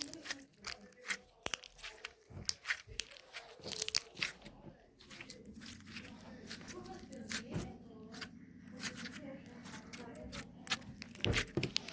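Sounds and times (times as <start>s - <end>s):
slime crackling and popping: 0.0s - 7.6s.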